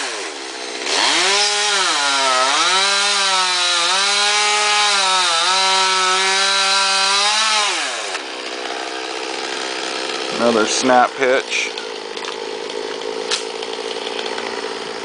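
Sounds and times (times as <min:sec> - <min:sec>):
chainsaw cutting wood: 0:00.0 - 0:15.0.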